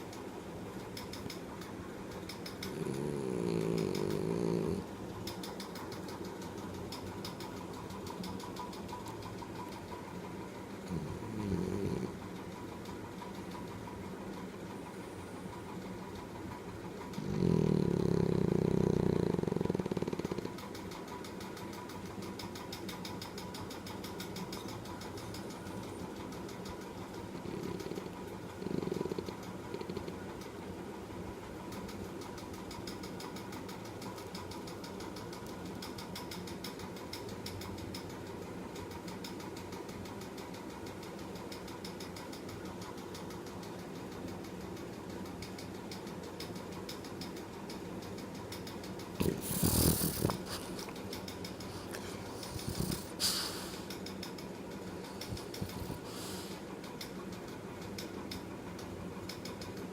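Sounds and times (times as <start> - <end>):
dog snoring: 2.3 - 9.7, 10.8 - 12.7, 17.0 - 30.4, 48.5 - 57.2.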